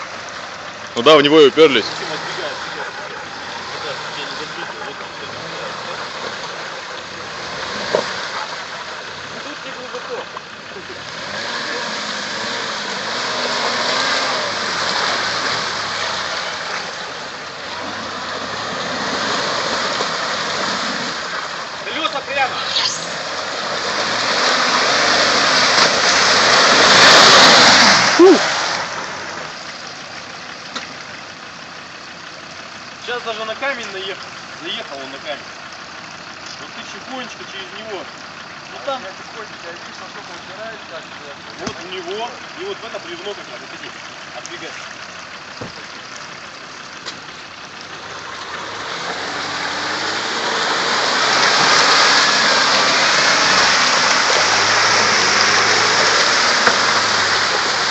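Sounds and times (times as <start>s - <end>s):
mud and water splashing: 0.0s - 57.9s
engine revving: 1.0s - 30.0s, 33.1s - 57.9s
short sharp cry: 28.1s - 28.6s.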